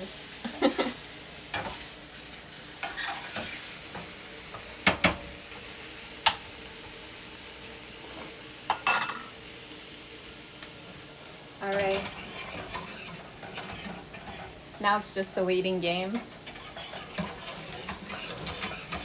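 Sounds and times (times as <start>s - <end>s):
mushrooms and onions sizzling: 0.0s - 19.0s
utensil clacking against pan: 16.2s - 19.0s.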